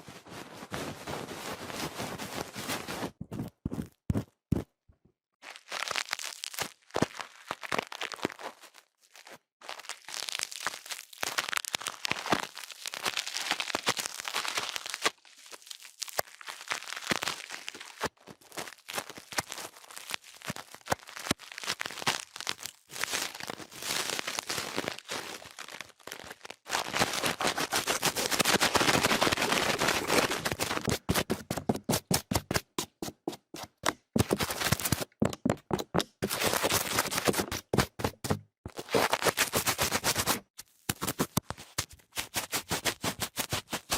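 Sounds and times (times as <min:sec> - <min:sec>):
plastic packaging crinkling: 0:05.5 - 0:08.7, 0:09.7 - 0:31.4, 0:34.2 - 0:35.2, 0:36.2 - 0:43.9.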